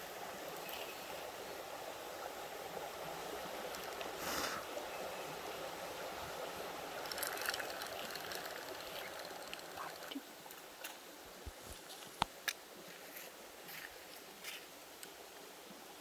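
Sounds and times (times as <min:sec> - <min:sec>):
creek water running: 0:00.0 - 0:16.0
faint clicks: 0:03.7 - 0:04.2, 0:07.0 - 0:11.0.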